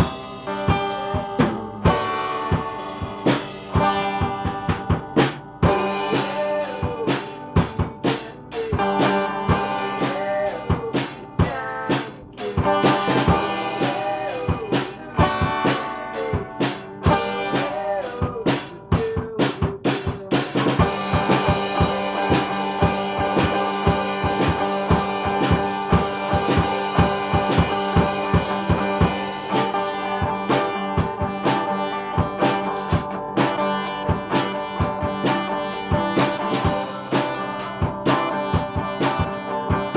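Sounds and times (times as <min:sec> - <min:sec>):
drum kit beat: 0:00.0 - 0:39.9
guitar: 0:00.0 - 0:39.9.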